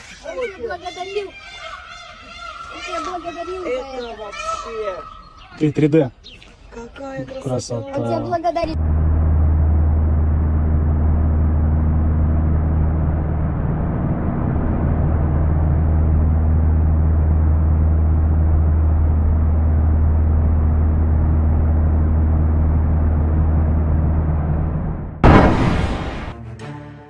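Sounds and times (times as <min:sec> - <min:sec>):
engine running with low hum: 0:08.6 - 0:26.3.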